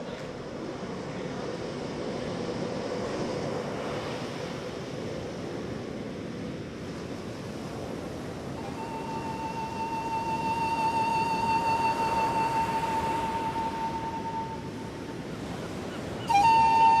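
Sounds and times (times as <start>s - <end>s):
held high musical note: 8.6s - 14.9s, 16.2s - 17.0s.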